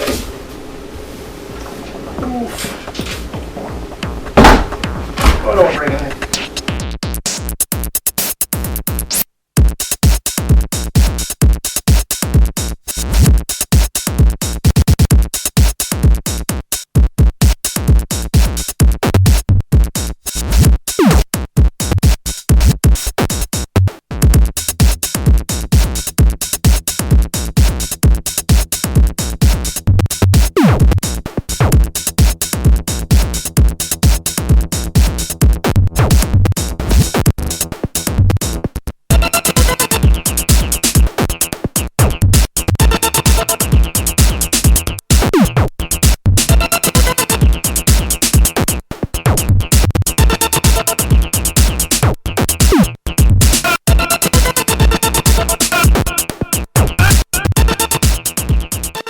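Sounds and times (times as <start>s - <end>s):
electronic dance music: 4.8s - 6.8s, 39.1s - 59.0s.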